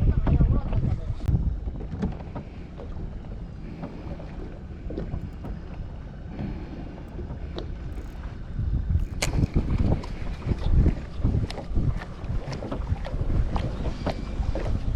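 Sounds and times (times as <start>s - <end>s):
boat low rumble: 0.0s - 14.9s
wind buffeting microphone: 0.0s - 14.9s
faint clicks: 3.6s - 8.3s.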